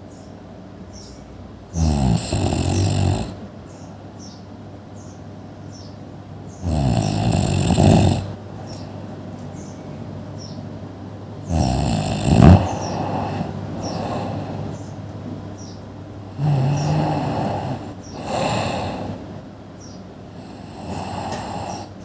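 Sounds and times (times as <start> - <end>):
person snoring: 1.7 - 3.4, 6.6 - 8.4, 11.4 - 14.8, 16.3 - 19.3, 20.3 - 22.0
quiet breathing: 11.4 - 15.0, 16.2 - 19.4, 20.3 - 22.0.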